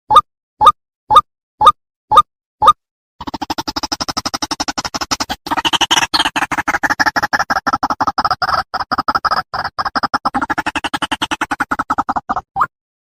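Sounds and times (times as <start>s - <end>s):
waterhen calling harsh pulses: 4.9s - 12.5s.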